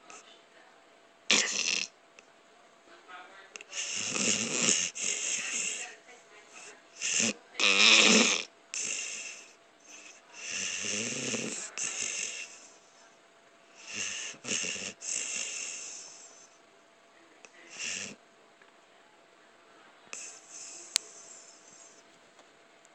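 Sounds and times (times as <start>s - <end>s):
man snoring loudly: 1.3s - 1.9s, 3.8s - 5.8s, 7.0s - 12.6s, 13.8s - 16.3s, 17.7s - 18.2s.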